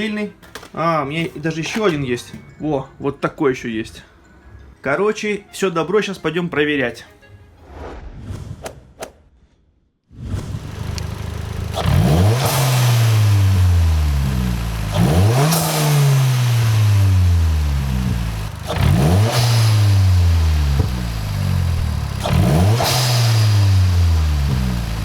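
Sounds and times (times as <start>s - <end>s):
car engine revving: 10.3s - 25.0s.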